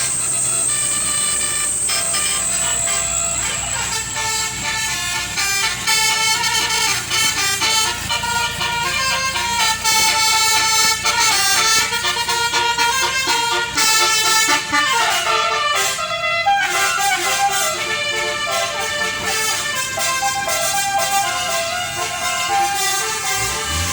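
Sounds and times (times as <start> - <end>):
bus engine rumble: 0.0 - 23.9
bus melody horn: 0.0 - 23.9.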